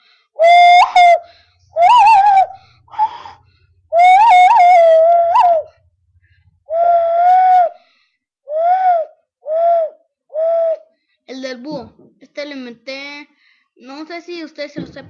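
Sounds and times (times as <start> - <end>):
hand whistle notes: 0.4 - 5.9, 6.6 - 7.8, 8.5 - 10.9.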